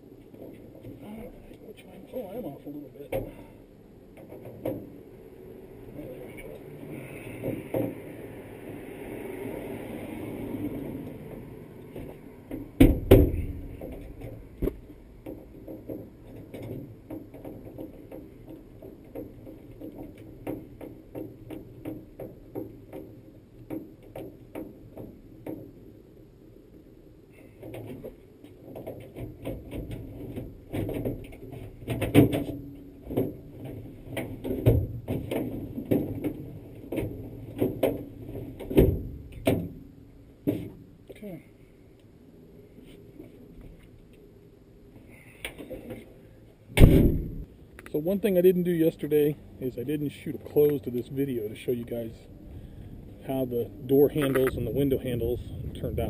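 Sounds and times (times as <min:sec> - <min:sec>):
light metallic clicks and knocks: 0:54.1 - 0:54.8.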